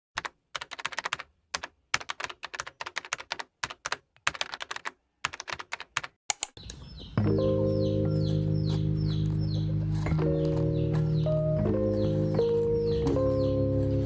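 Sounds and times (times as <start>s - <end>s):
typing on a keyboard: 0.2s - 6.6s.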